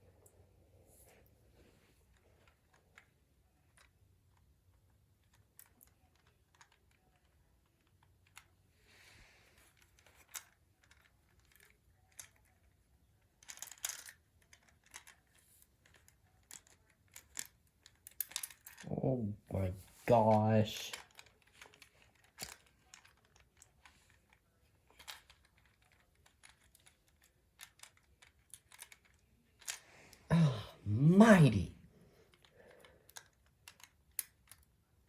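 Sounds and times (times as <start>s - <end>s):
plastic toy parts clicking: 5.2s - 8.5s, 9.6s - 12.7s, 13.4s - 18.9s, 20.9s - 29.8s, 32.3s - 34.8s.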